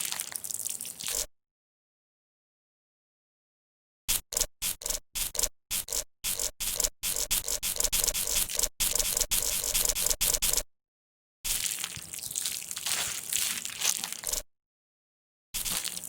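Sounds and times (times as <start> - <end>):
slime squishing: 11.5 - 14.4.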